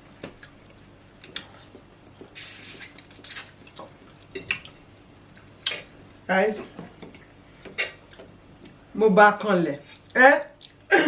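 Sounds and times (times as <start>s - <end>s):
breathy hiss: 2.4s - 2.9s
wet mouth clicks and smacks: 2.4s - 4.8s, 5.6s - 5.9s.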